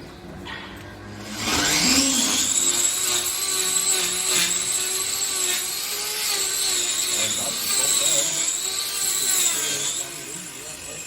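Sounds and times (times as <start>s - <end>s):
small motor whining: 1.0s - 11.0s.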